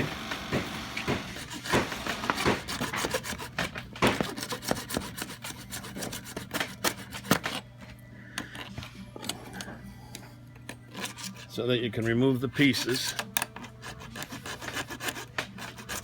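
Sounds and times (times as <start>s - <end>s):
hacksaw cutting pipe: 0.0s - 7.6s, 10.9s - 11.5s, 12.4s - 16.0s.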